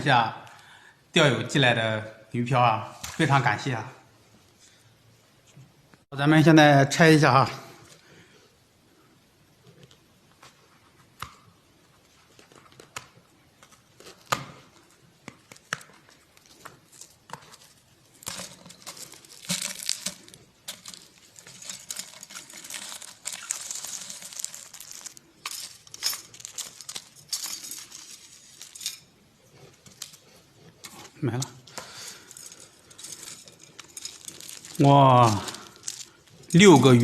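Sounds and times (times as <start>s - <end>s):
parcel packaging crinkling: 11.9s - 37.0s
wrapping tearing: 12.1s - 37.0s.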